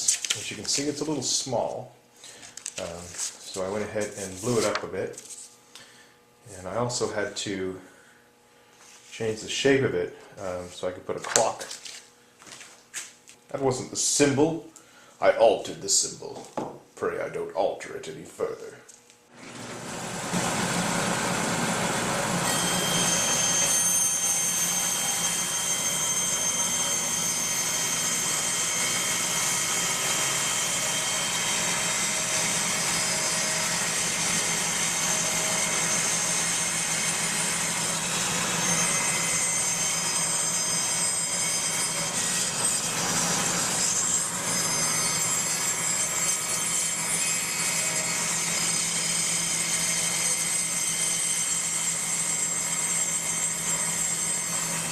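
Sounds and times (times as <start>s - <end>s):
woodworking power tool humming: 18.9s - 54.9s
high whining tones: 21.4s - 43.5s.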